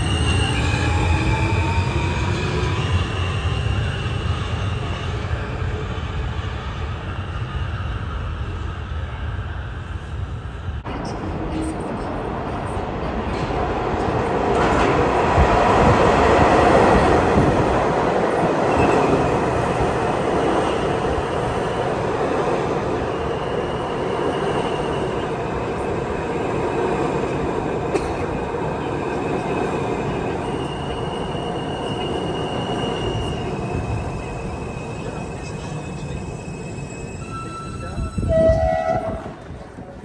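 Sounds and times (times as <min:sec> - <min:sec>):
train wheels rumbling on rail: 0:00.0 - 0:40.0
high wheel squeal: 0:30.2 - 0:39.6.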